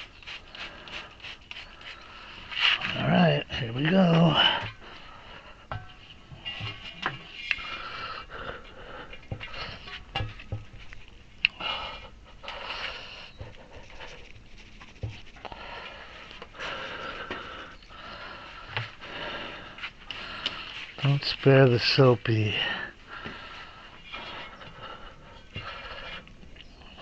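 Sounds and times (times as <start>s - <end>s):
knocks and clunks of handling: 5.7s - 7.6s, 9.2s - 11.0s.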